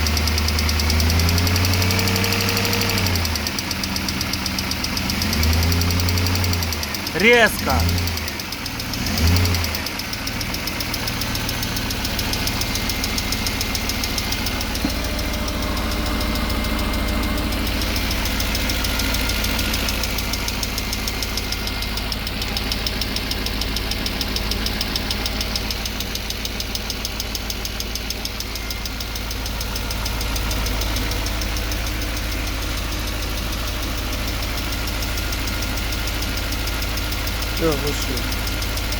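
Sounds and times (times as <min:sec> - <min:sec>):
car engine idling with knock: 0:00.0 - 0:38.9.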